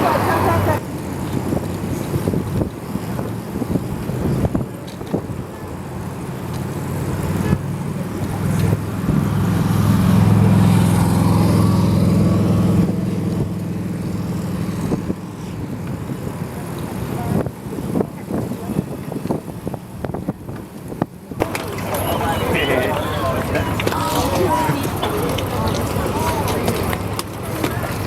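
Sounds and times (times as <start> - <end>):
vehicle passing by: 0.0 - 2.6, 5.6 - 17.8, 21.4 - 28.0.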